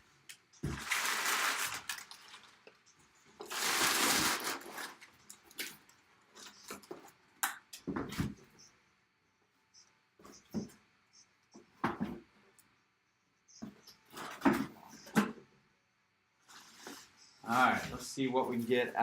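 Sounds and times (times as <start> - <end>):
packaging crinkling and tearing: 0.7 - 2.8, 3.4 - 5.8.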